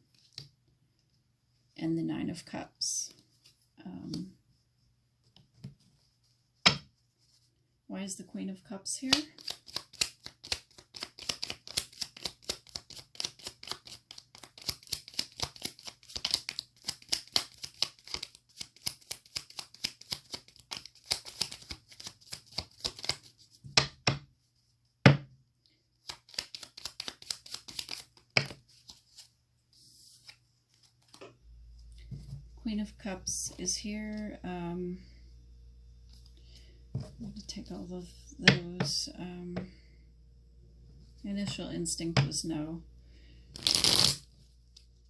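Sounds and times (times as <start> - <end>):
cards being shuffled: 9.1 - 24.0, 26.0 - 31.3, 43.6 - 44.9.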